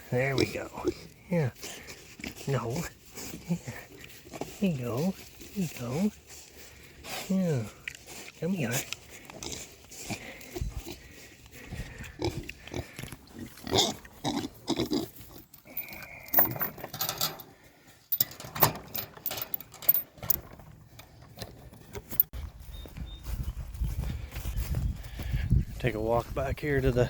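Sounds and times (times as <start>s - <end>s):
pigs grunting: 0.1s - 4.6s, 8.7s - 16.4s.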